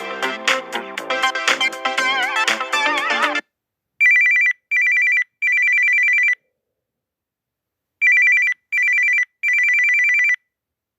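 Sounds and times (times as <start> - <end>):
trilling telephone ringtone: 4.0 - 6.4, 8.0 - 10.4.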